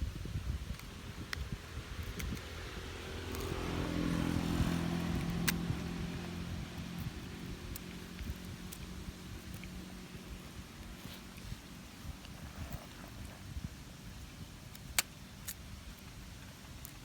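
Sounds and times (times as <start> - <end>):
engine hum of passing vehicle: 0.1 - 13.6.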